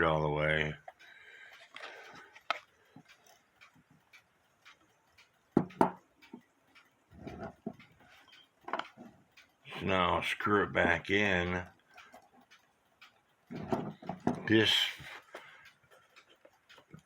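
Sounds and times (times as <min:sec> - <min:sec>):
alarm clock ticking: 0:00.0 - 0:17.0
knocks and clicks: 0:05.6 - 0:06.4, 0:13.5 - 0:14.5.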